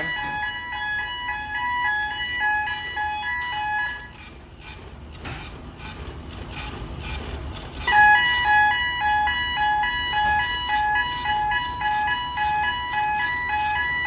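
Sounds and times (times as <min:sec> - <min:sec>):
two-tone alarm beeping: 0:00.0 - 0:04.8, 0:07.8 - 0:14.0
generator machinery drone: 0:00.0 - 0:14.0.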